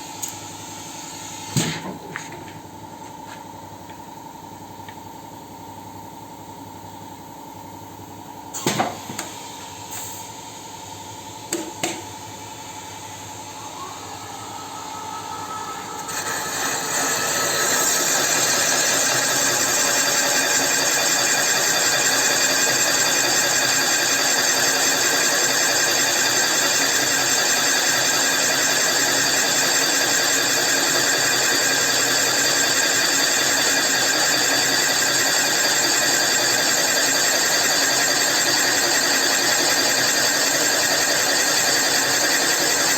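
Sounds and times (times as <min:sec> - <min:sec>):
machine tool running loudly: 0:12.6 - 0:42.9.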